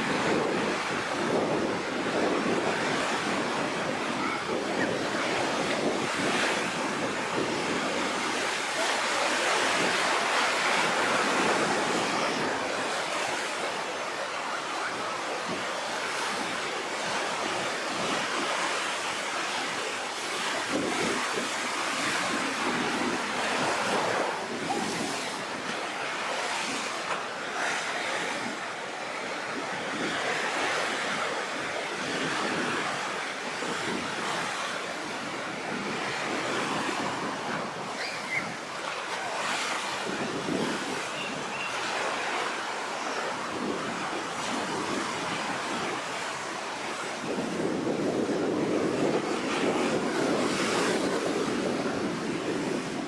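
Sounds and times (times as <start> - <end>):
surf breaking and washing: 0.0 - 53.0
wind: 0.0 - 53.0.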